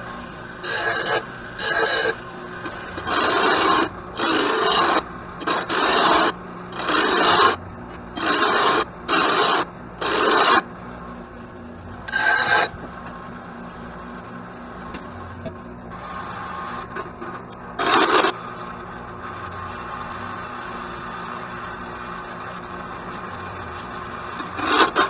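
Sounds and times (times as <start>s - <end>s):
hand file rasping on metal blade: 0.6s - 2.2s, 3.0s - 7.6s, 8.2s - 10.6s, 12.1s - 12.7s, 17.8s - 18.3s, 24.6s - 25.0s.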